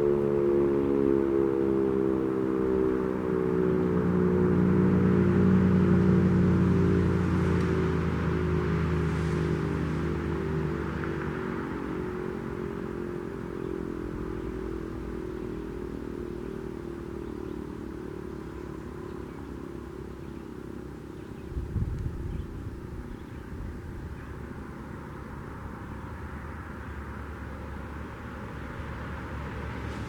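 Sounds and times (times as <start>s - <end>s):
warning siren winding down: 0.0s - 20.0s
outdoor background: 0.0s - 30.0s.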